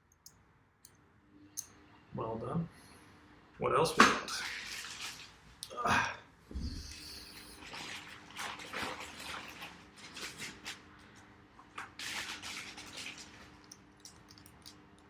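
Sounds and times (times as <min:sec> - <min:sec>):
small parts clicking: 0:00.0 - 0:01.0, 0:13.6 - 0:15.0.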